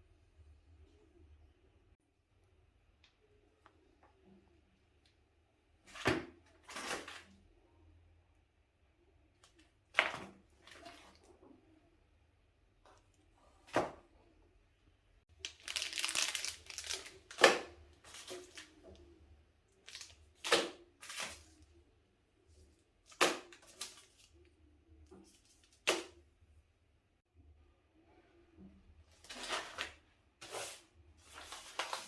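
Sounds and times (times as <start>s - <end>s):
plastic bags rustling: 15.4s - 18.7s, 19.8s - 21.3s.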